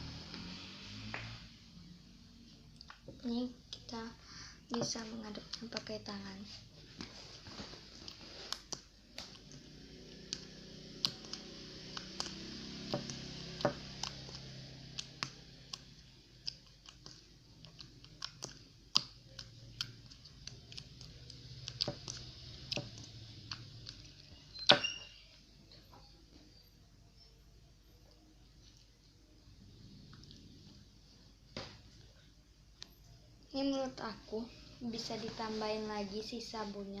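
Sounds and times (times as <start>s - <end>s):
faint low hum: 0.0s - 37.0s
slime clicking and popping: 8.4s - 25.0s.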